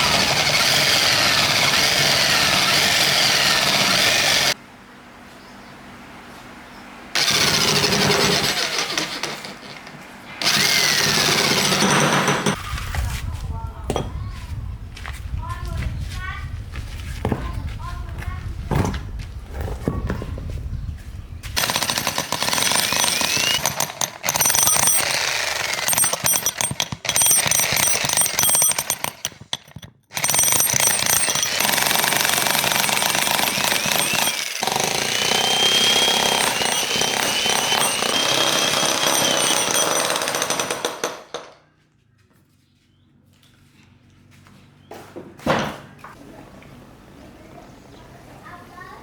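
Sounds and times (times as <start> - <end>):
demolition hammer hammering: 10.4 - 12.6, 21.6 - 41.6.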